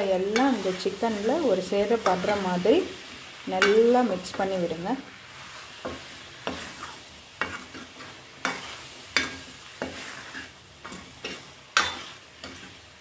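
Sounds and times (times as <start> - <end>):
food sizzling: 0.0 - 13.0
spatula scraping a pan: 5.3 - 13.0.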